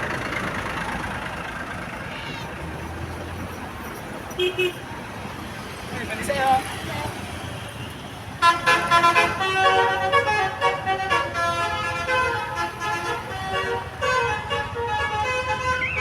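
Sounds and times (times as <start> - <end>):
musical bus horn melody: 8.4 - 16.0.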